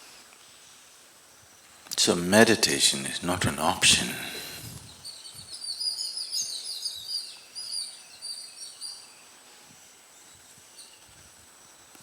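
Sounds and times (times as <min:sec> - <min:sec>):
faint background hiss: 0:00.0 - 0:12.0
small birds chirping: 0:04.4 - 0:09.4.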